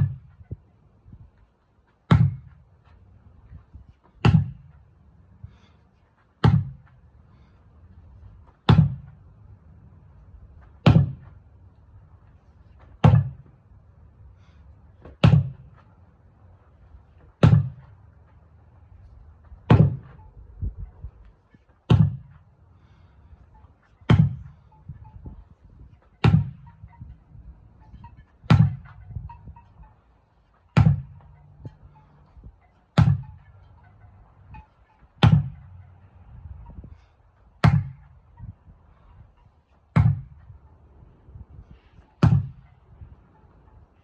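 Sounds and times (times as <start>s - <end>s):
sledgehammer thudding on a tire: 0.0s - 0.3s, 2.1s - 2.6s, 4.1s - 4.8s, 6.4s - 7.0s, 8.6s - 9.2s, 10.8s - 11.4s, 12.9s - 13.5s, 15.0s - 15.8s, 17.4s - 17.9s, 19.6s - 20.2s, 21.9s - 22.4s, 24.1s - 24.6s, 26.2s - 26.7s, 28.4s - 29.0s, 30.8s - 31.2s, 33.0s - 33.4s, 35.2s - 35.6s, 37.6s - 38.1s, 39.9s - 40.4s, 42.2s - 42.6s.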